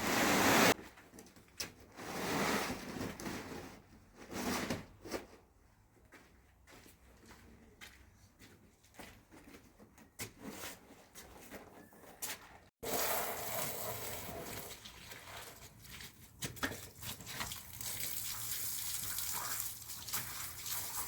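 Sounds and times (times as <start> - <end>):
water running: 12.8 - 21.0.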